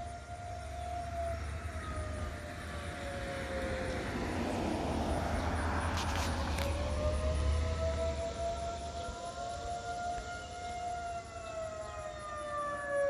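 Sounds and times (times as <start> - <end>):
warning siren steady tone: 0.0 - 13.0.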